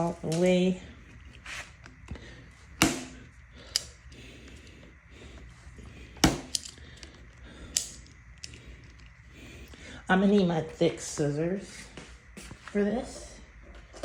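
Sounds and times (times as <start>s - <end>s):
rustling and handling noise: 0.0s - 14.0s
sharp plastic clicks and snaps: 3.6s - 4.7s, 6.2s - 9.8s.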